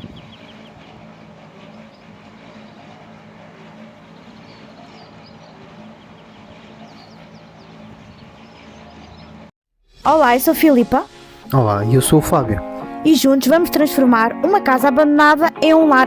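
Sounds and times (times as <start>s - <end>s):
birds chirping: 0.0s - 9.5s
low mechanical hum: 0.0s - 9.5s.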